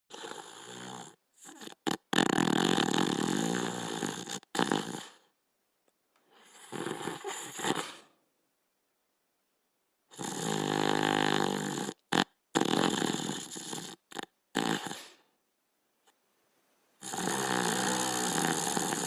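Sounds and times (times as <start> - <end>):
dog snoring: 0.1 - 5.3, 6.3 - 8.1, 10.1 - 15.2, 17.0 - 19.0.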